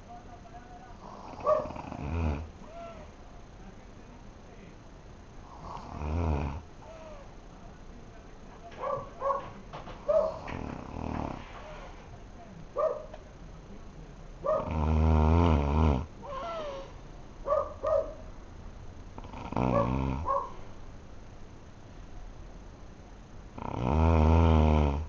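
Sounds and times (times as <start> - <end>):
man snoring: 1.0 - 3.1, 5.4 - 7.3, 10.4 - 11.9, 14.6 - 16.8, 19.2 - 20.3, 23.5 - 25.0.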